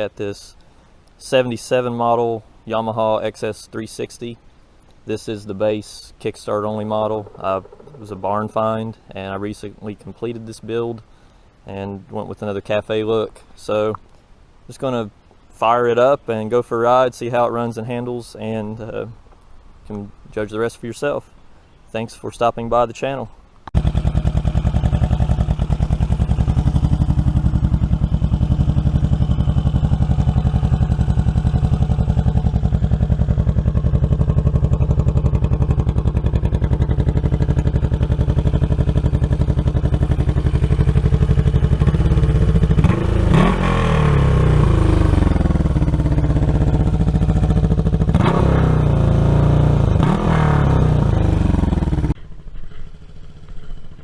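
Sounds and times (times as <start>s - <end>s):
motorcycle engine idling and revving: 7.0s - 8.6s, 23.7s - 54.0s.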